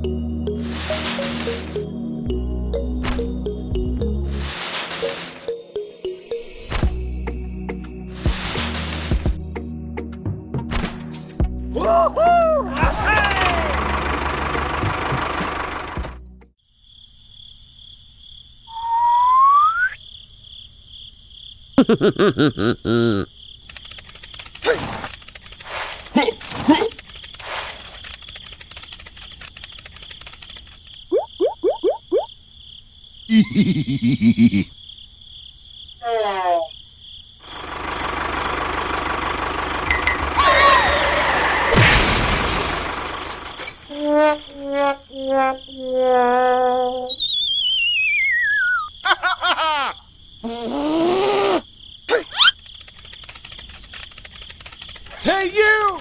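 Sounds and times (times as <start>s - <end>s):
high insect-like trill: 0.5s - 2.0s, 23.1s - 32.7s, 43.5s - 49.2s, 51.8s - 56.0s
cartoon falling chirps: 18.7s - 20.0s, 43.9s - 49.0s
rapid ticking clicks: 23.6s - 31.3s, 52.4s - 56.0s.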